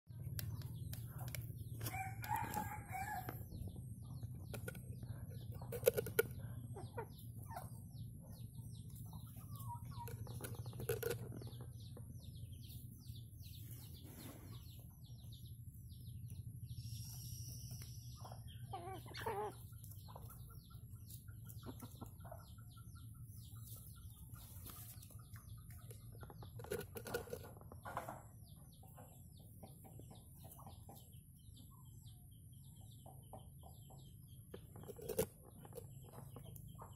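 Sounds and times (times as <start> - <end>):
junglefowl clucking: 5.7 - 7.8, 18.6 - 20.6.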